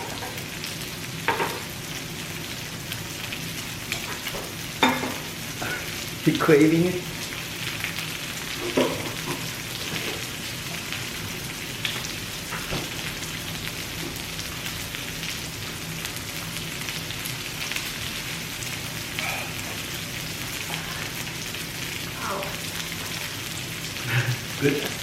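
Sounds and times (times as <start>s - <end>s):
pork sizzling on a grill: 0.0s - 25.0s.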